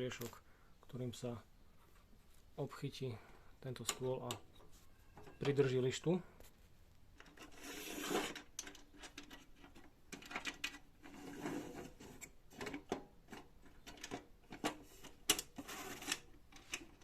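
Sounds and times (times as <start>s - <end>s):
metal parts clicking and rattling: 7.2s - 11.3s, 12.6s - 17.0s
metal parts scraping: 7.2s - 12.9s, 13.7s - 17.0s.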